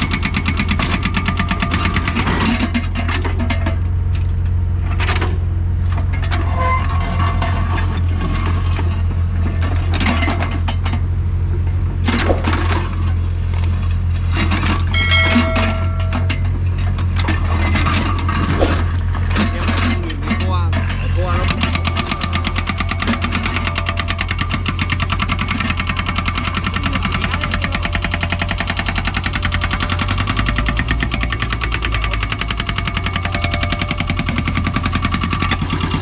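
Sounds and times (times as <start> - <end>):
excavator diesel engine running: 0.0 - 36.0
metallic clinks and knocks: 14.5 - 18.9
ringing metal scrape: 14.8 - 16.8.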